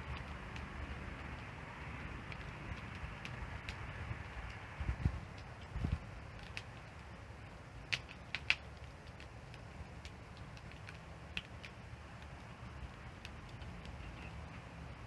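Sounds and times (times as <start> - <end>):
low steady rumble: 0.0 - 15.0
wood fire crackling: 0.0 - 15.0
sharp pops: 7.8 - 11.8.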